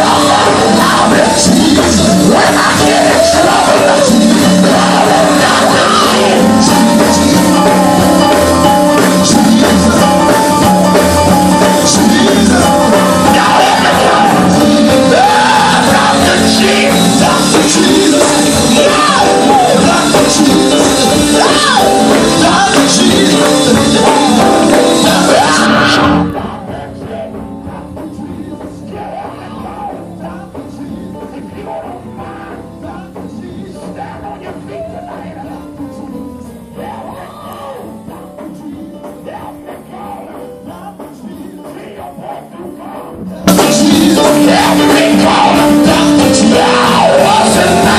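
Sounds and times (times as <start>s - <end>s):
live gospel band with drums: 0.0s - 47.9s
people singing: 0.0s - 47.9s.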